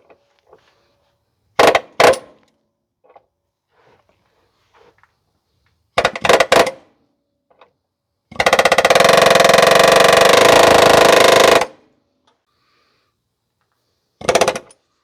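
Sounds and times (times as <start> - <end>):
pneumatic air hammer hammering: 1.6 - 2.4, 6.0 - 6.8, 14.2 - 14.9.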